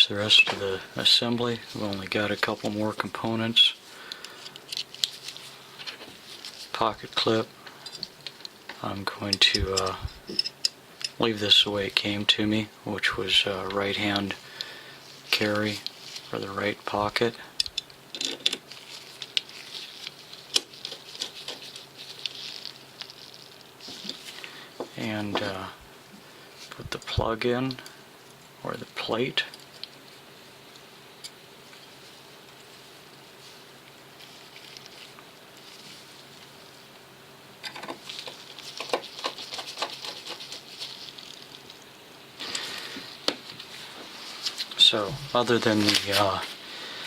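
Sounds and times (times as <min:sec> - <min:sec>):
small metal parts clicking and scraping: 0:04.2 - 0:06.6, 0:07.8 - 0:08.6, 0:09.2 - 0:11.2, 0:17.6 - 0:24.4, 0:37.6 - 0:41.8
scratchy handling: 0:15.1 - 0:25.6, 0:37.7 - 0:41.8.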